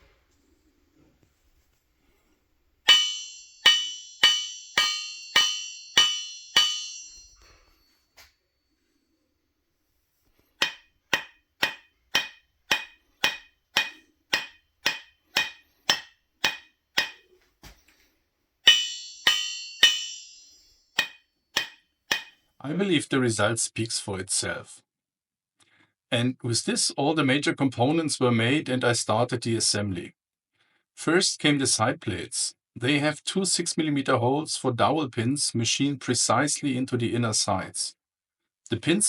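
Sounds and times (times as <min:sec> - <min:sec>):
aluminium profile knocks ringing: 0:02.9 - 0:07.6, 0:10.6 - 0:17.3, 0:18.7 - 0:22.4.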